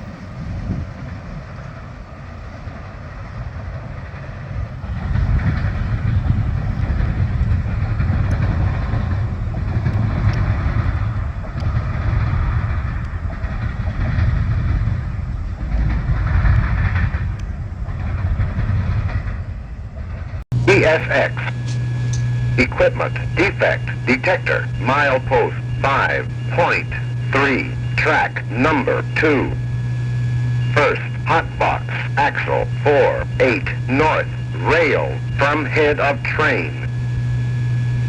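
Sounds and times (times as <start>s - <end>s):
wheels on rails: 0.0s - 20.7s
freight train rumbling past: 0.0s - 38.0s.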